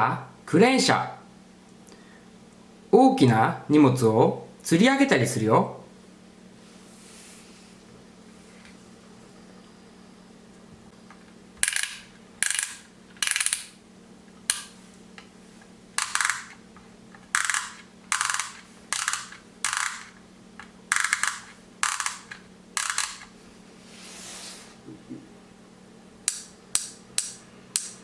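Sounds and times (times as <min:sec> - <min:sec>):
faint steady hum: 0:00.0 - 0:28.0
toy truck rattling clacks: 0:16.0 - 0:16.6, 0:17.4 - 0:20.1, 0:20.9 - 0:23.2.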